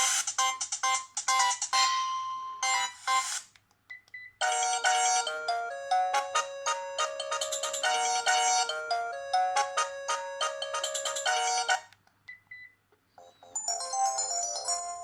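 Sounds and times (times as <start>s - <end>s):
polyphonic ringtone melody: 4.4s - 11.8s, 13.2s - 15.0s.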